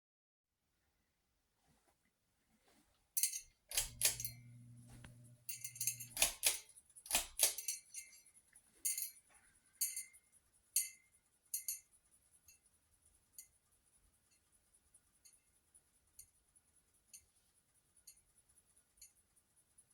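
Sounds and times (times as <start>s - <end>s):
metal pull chain jangling: 3.2s - 8.2s.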